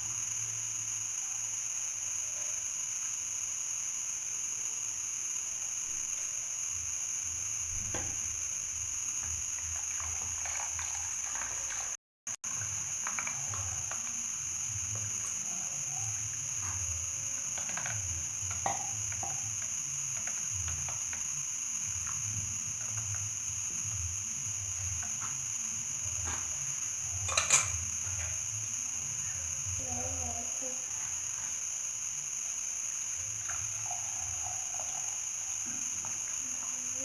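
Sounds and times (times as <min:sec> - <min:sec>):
liquid pouring: 0:09.2 - 0:29.3, 0:33.2 - 0:36.4
utensils clinking and knocking: 0:27.1 - 0:28.4.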